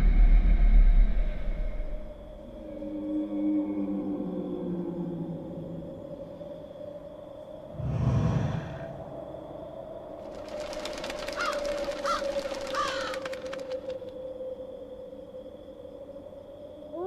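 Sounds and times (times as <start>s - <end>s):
crow cawing: 11.4s - 13.5s.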